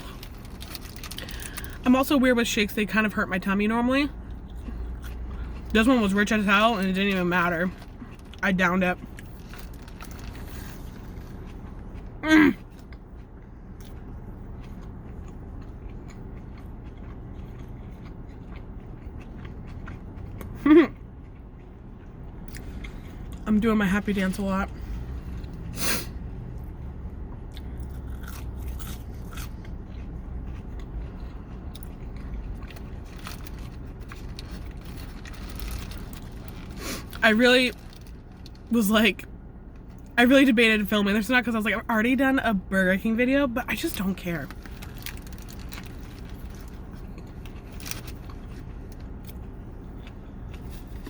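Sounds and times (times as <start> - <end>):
crunchy chewing: 0.0 - 1.8, 9.0 - 23.4, 27.3 - 38.7, 43.9 - 51.0
low hum: 0.0 - 40.2.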